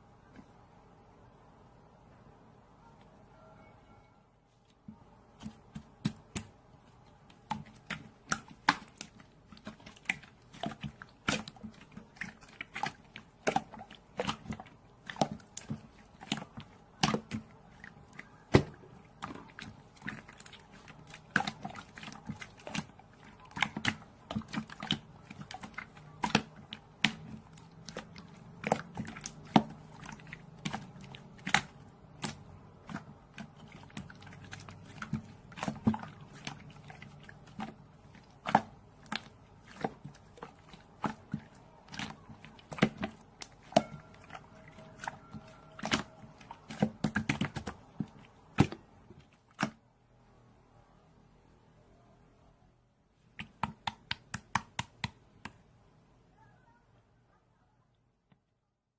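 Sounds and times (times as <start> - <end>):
faint low hum: 0.0 - 58.9.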